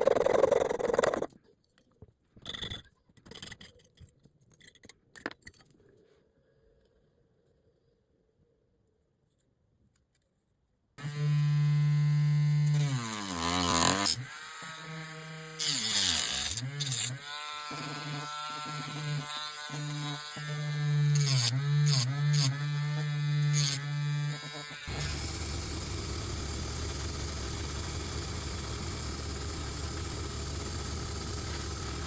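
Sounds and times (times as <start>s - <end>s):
electric power tool motor humming: 11.0s - 32.0s.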